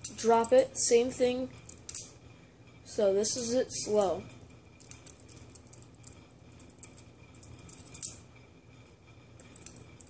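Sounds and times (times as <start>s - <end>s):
metal comb clicking and rattling: 1.6s - 2.1s, 3.3s - 8.2s, 9.4s - 10.0s
handle clacking: 3.4s - 8.2s, 9.4s - 10.0s.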